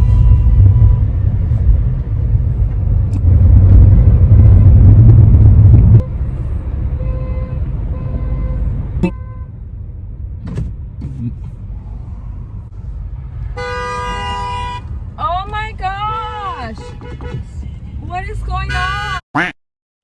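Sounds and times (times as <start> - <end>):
loud low rumble: 0.0 - 6.9
car horns honking: 7.0 - 9.6, 13.4 - 19.5.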